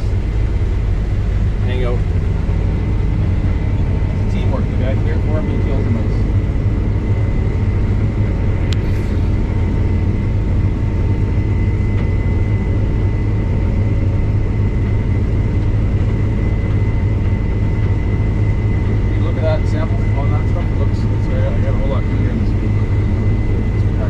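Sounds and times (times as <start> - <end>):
combine harvester droning: 0.0 - 24.0
constant high whine: 0.0 - 24.0.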